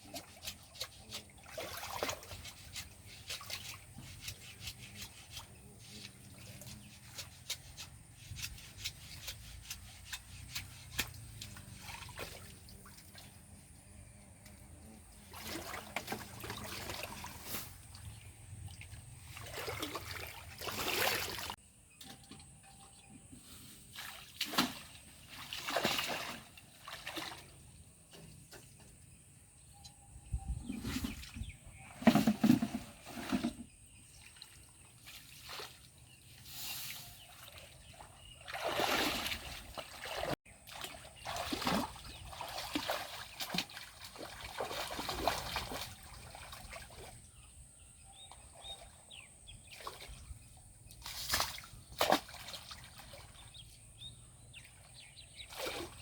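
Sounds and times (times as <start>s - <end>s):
water sloshing and splashing: 0.0s - 23.0s, 23.8s - 29.0s, 30.6s - 56.0s
faint water trickle: 11.1s - 21.5s.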